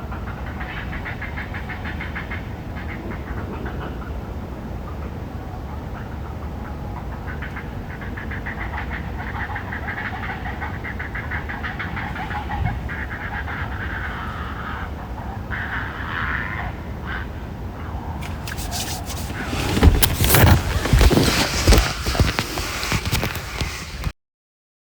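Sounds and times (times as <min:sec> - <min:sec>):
loud rumbles and thumps: 0:18.2 - 0:23.6.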